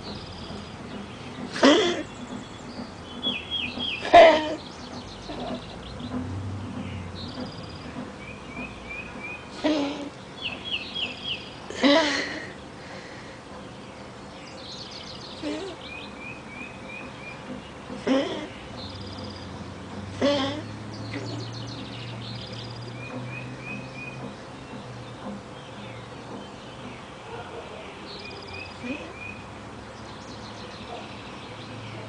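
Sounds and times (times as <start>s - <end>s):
small birds chirping: 0.0s - 11.8s, 12.4s - 32.0s
dog coughing and wheezing: 1.5s - 2.1s, 4.0s - 4.6s, 9.6s - 10.1s, 11.7s - 12.6s, 18.0s - 18.6s.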